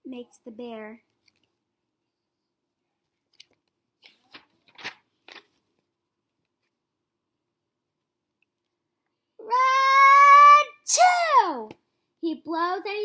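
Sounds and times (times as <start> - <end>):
book page turning: 4.0 - 5.6.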